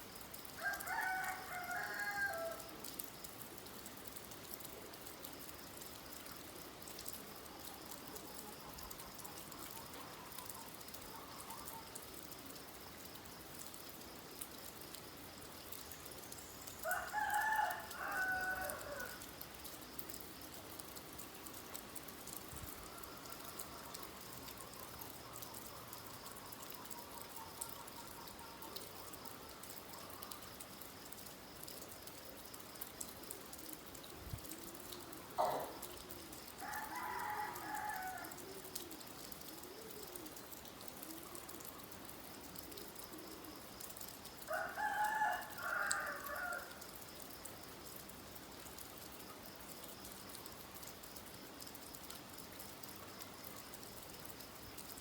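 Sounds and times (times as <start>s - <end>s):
light rain: 0.0s - 55.0s
rooster crowing: 0.6s - 2.7s, 16.8s - 19.2s, 36.6s - 38.4s, 44.5s - 46.8s.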